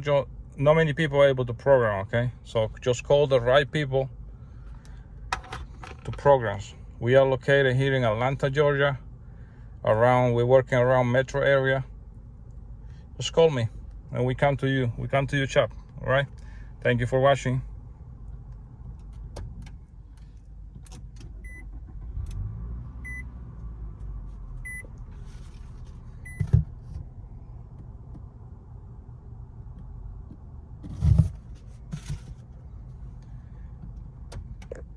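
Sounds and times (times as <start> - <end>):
car warning chime beeping: 21.4 - 21.8, 23.0 - 23.3, 24.6 - 24.9, 26.2 - 26.5.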